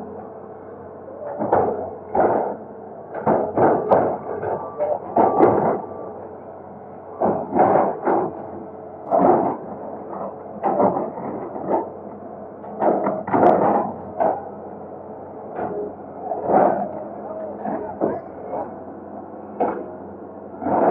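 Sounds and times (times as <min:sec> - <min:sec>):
excavator engine running: 0:00.0 - 0:20.9.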